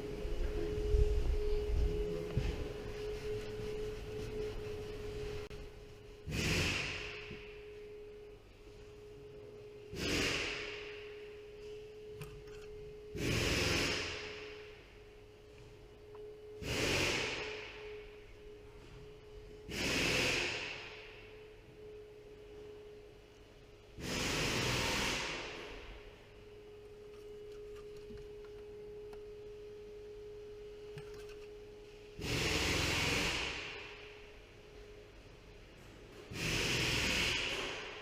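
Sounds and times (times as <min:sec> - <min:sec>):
faint steady tone: 0:00.0 - 0:09.9, 0:14.1 - 0:19.7, 0:20.6 - 0:24.0, 0:25.4 - 0:32.2.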